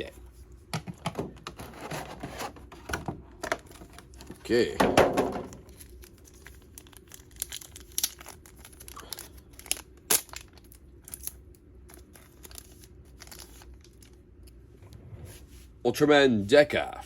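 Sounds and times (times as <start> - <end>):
plastic packaging crinkling and tearing: 5.5 - 14.2.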